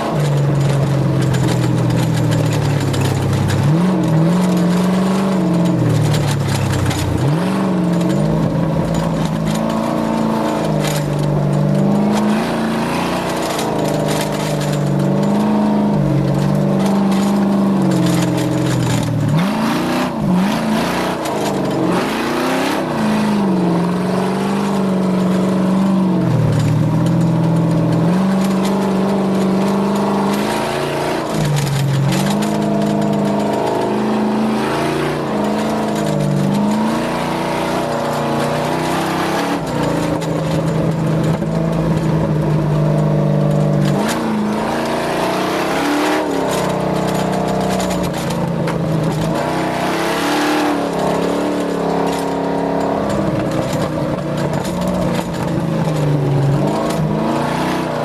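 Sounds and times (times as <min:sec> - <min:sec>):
constant rushing noise: 0:00.0 - 0:58.0
race vehicle engine revving: 0:00.0 - 0:58.0.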